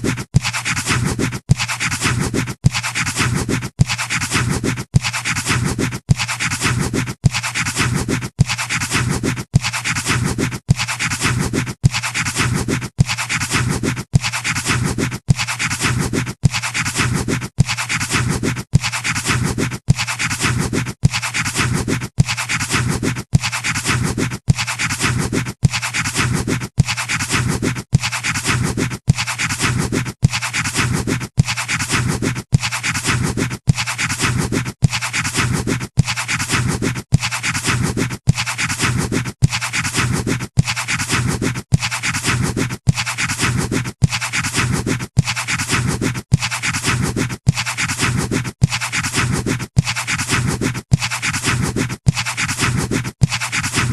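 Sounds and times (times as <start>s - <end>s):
pencil scratching on paper: 0.0s - 53.9s.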